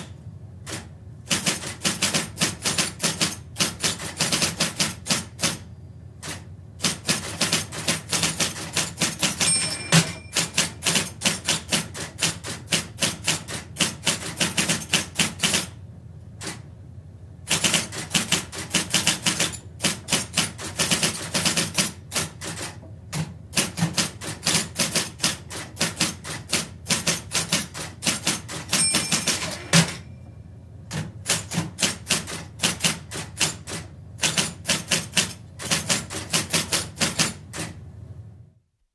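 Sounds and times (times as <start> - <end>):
electric typewriter keystrokes: 0.0 - 15.8, 16.4 - 16.6, 17.5 - 30.1, 30.9 - 37.8
short ringing tone: 9.4 - 10.6, 28.8 - 30.5.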